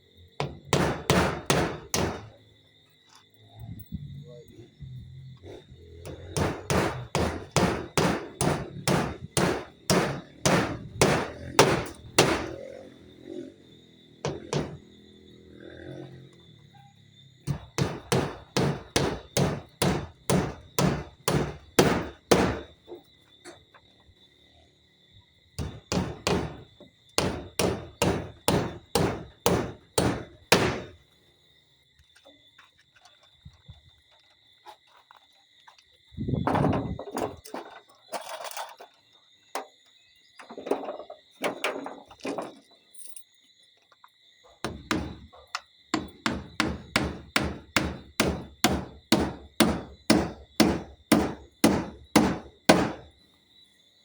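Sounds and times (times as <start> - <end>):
hammer driving nails: 0.4 - 2.3, 6.1 - 12.6, 14.2 - 14.8, 17.5 - 22.7, 25.6 - 26.6, 27.2 - 31.0, 44.6 - 53.1.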